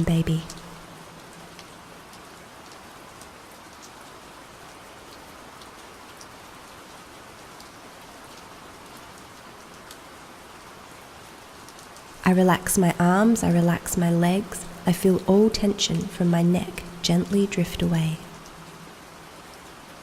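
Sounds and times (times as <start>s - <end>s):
raindrop ticks: 0.0s - 4.1s, 5.0s - 6.4s, 7.6s - 10.1s, 11.6s - 18.9s
gentle rain hiss: 0.0s - 20.0s.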